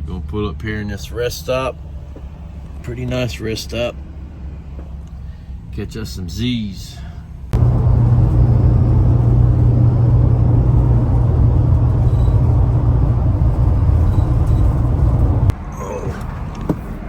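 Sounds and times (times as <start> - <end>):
road vehicle droning: 6.9 - 17.0.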